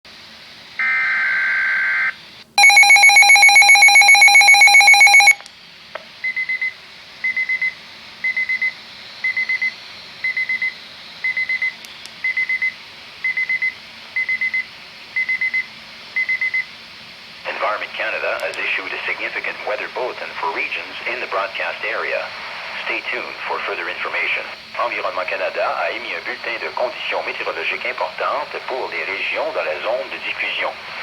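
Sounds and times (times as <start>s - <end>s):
pulsing alarm: 2.6s - 5.4s
short high beeps: 2.6s - 5.4s.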